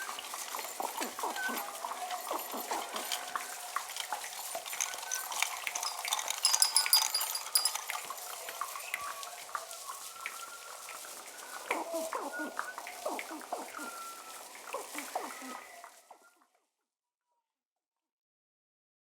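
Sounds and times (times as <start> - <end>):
light clinking and tapping: 0.5 - 8.6.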